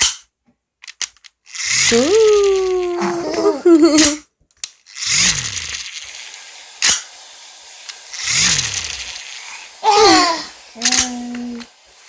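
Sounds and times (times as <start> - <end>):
sharp click: 0.0 - 1.8
electric fan whooshing: 5.1 - 12.0.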